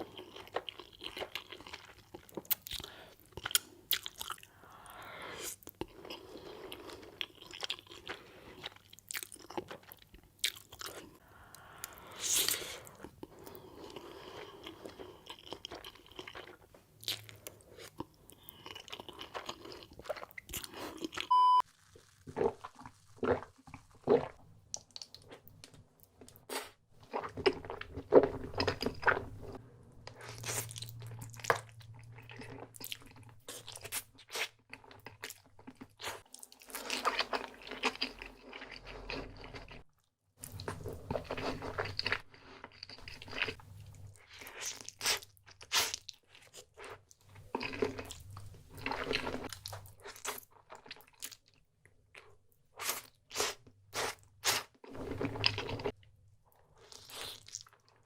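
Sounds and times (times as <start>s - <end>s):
chewing and biting food: 0.0s - 4.5s, 5.6s - 11.2s, 11.8s - 26.4s, 27.0s - 56.0s, 56.6s - 58.0s
brief beep: 21.3s - 21.6s.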